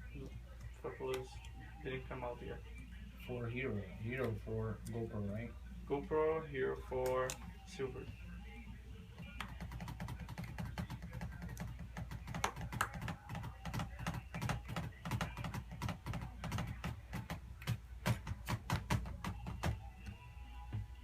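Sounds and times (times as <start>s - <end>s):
keyboard typing: 9.3s - 20.2s.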